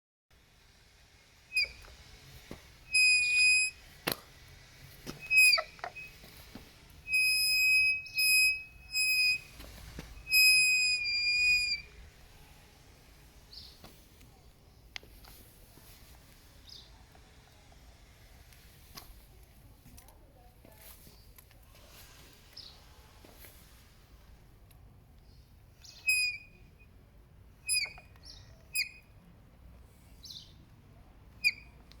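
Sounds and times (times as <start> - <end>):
scooter brake squealing: 1.5 - 2.0, 2.9 - 4.0, 5.0 - 6.4, 7.0 - 12.0, 25.8 - 26.9, 27.6 - 29.2, 31.4 - 31.8.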